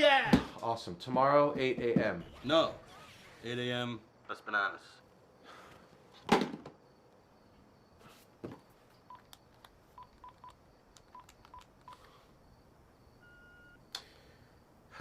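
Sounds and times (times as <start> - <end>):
phone keypad beeps: 10.0 - 12.1, 13.2 - 13.8.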